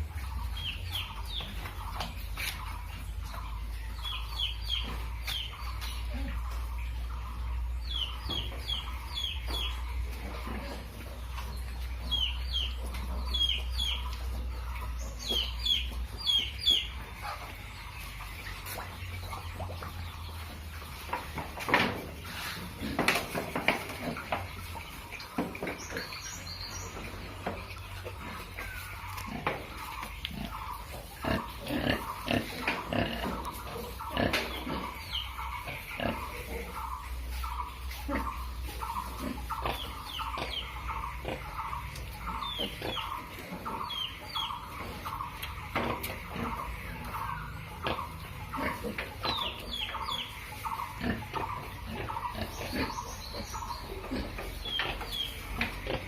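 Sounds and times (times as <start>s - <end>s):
pigs grunting: 10.2s - 11.4s, 28.1s - 56.0s.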